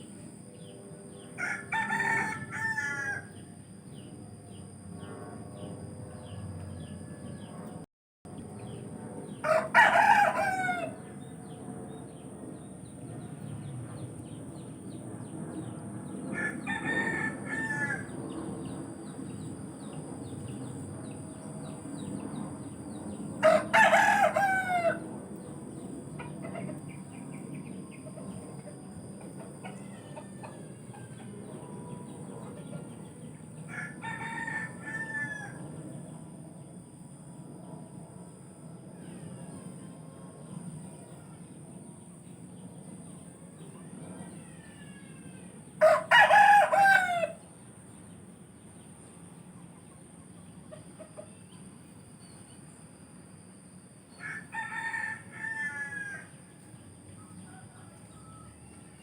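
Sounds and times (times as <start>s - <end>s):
steady high-pitched whine: 0.0s - 59.0s
roosters crowing: 1.2s - 3.6s, 6.2s - 7.8s, 9.3s - 11.6s, 15.9s - 19.2s, 20.3s - 36.1s, 43.5s - 47.5s, 54.1s - 59.0s.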